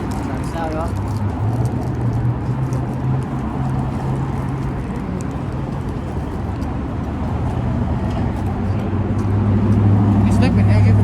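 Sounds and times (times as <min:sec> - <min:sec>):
low engine hum of traffic: 0:00.0 - 0:11.0.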